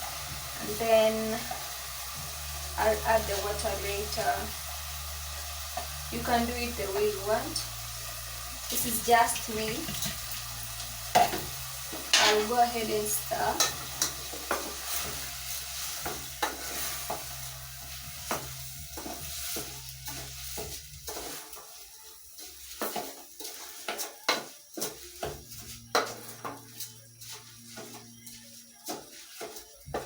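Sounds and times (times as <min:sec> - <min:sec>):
food sizzling in a pot: 0:00.0 - 0:30.0
spoon scraping a pot: 0:11.1 - 0:12.6, 0:13.4 - 0:17.4.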